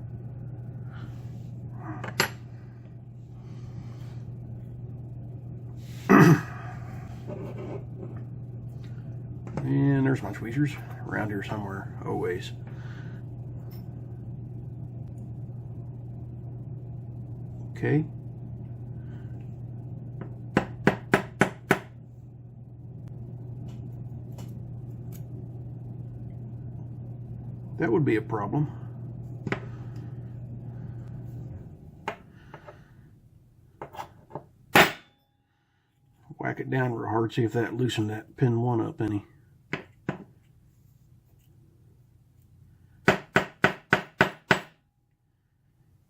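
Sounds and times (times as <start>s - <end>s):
steady low hum: 0.0s - 46.0s.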